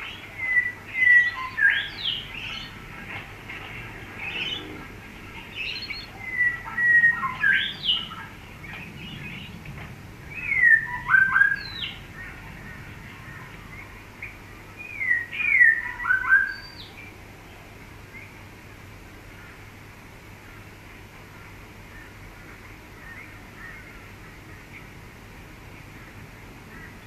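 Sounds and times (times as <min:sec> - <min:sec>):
songbird whistling: 0:00.1 - 0:02.7, 0:05.5 - 0:09.6, 0:10.3 - 0:12.4, 0:13.2 - 0:17.0.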